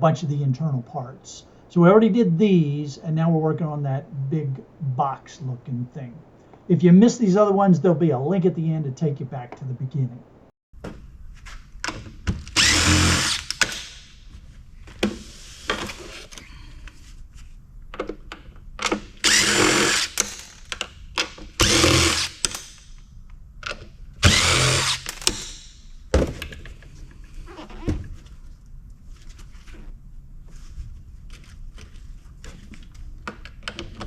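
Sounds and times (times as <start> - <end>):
power drill driving screws: 12.5 - 14.0, 19.2 - 20.6, 21.6 - 22.6, 24.2 - 25.6.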